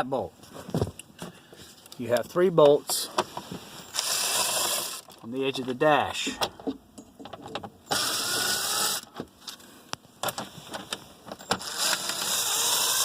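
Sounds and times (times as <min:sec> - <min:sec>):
power driver motor running: 0:11.6 - 0:13.0.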